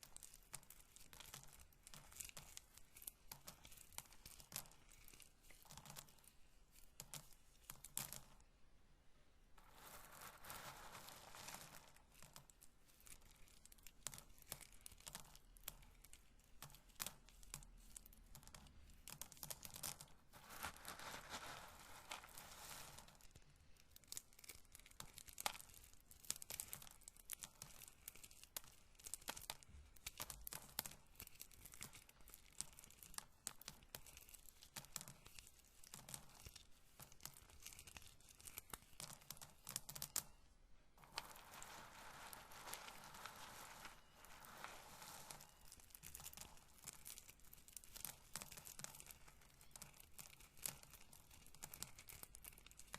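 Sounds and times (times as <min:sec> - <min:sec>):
corn kernels clicking and rattling: 0:00.0 - 0:08.4, 0:09.6 - 0:40.4, 0:41.0 - 0:52.9
rubbing of corn kernels: 0:09.6 - 0:18.6, 0:19.2 - 0:23.3, 0:24.0 - 0:40.3, 0:41.0 - 0:52.9.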